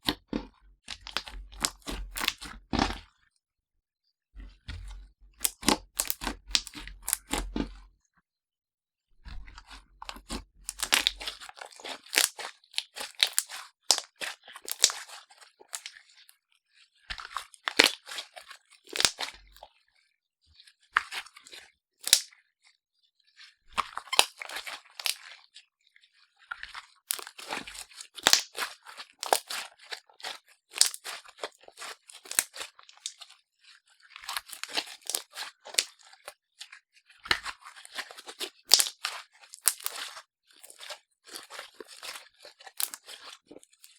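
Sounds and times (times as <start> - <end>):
slime being kneaded sticky clicks: 5.4 - 7.4.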